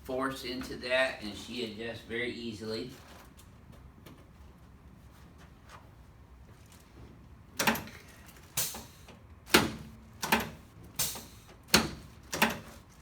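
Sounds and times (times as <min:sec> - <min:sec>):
sharp mechanical clacks: 0:07.6 - 0:12.7.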